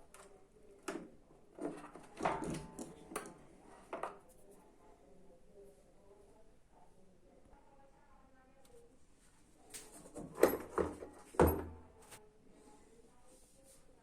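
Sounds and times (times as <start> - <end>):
knocks and clatters of tools: 0.8 - 4.2, 10.1 - 11.8.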